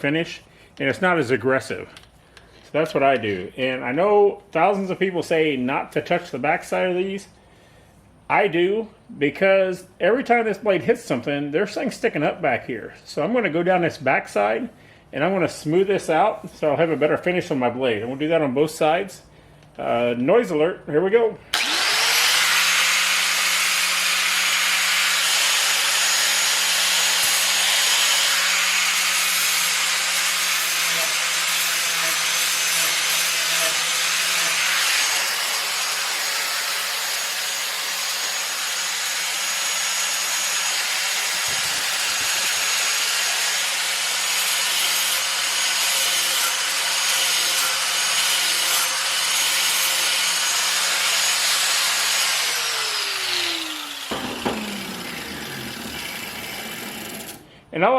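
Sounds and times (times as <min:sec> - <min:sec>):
grinder motor whine: 0:21.5 - 0:29.2, 0:33.3 - 0:44.4, 0:50.2 - 0:57.4
grinder abrasive hiss on steel: 0:44.3 - 0:54.4.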